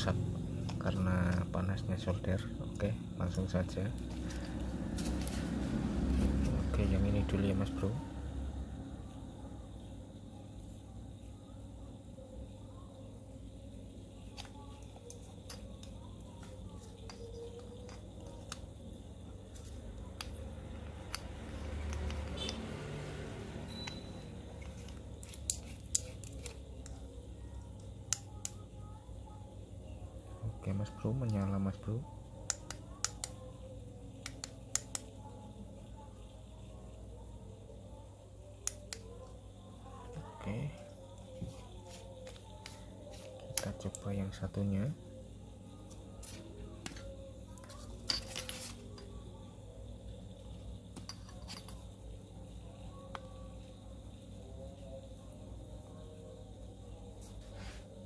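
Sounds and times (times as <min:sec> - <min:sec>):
metal parts clicking and clinking: 0:47.6 - 0:49.0.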